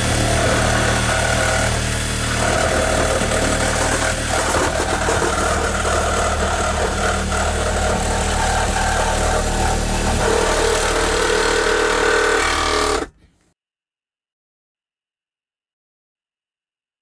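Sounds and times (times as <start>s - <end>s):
power saw cutting: 0.0s - 13.2s.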